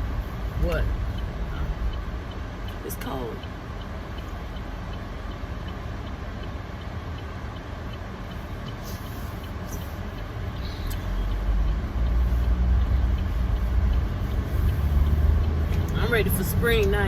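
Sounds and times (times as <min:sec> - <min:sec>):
car engine and road rumble: 0:00.0 - 0:17.0.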